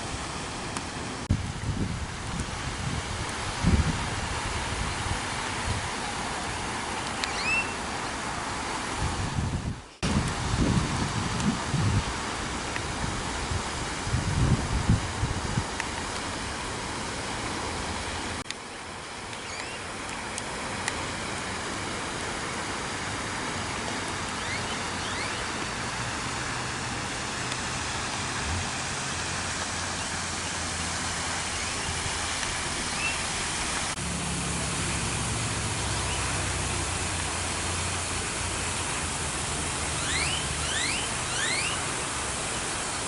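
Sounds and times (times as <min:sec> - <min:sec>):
steady rushing outdoor noise: 0:00.0 - 0:43.0
high rising bird chirps: 0:07.2 - 0:07.8, 0:19.4 - 0:19.9, 0:24.4 - 0:25.5, 0:32.9 - 0:33.2, 0:40.0 - 0:41.9.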